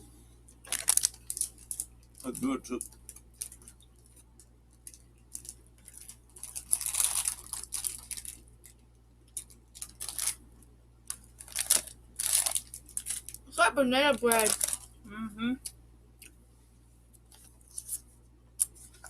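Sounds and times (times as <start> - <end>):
plastic wrappers crinkling: 0.5 - 10.4, 11.0 - 13.5, 14.1 - 15.0.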